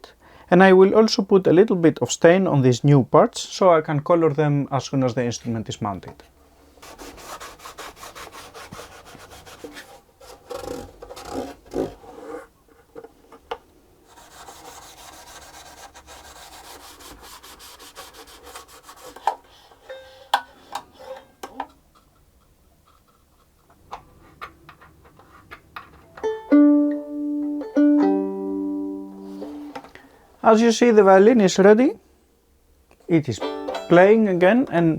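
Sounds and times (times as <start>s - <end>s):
rubbing on violin wooden body: 6.8s - 12.5s, 14.1s - 19.8s
plucked violin strings: 26.1s - 29.8s, 33.3s - 34.7s.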